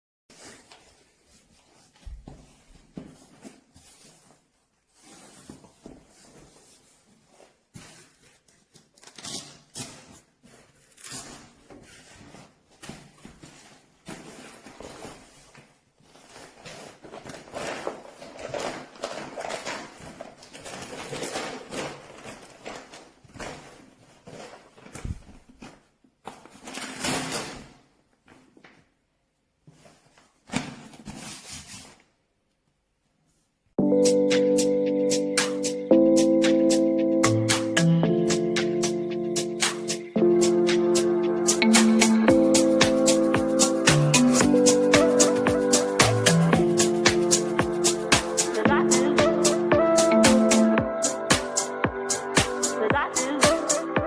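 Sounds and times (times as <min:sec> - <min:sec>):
rustling and knocking handling noises: 0:00.3 - 0:32.1.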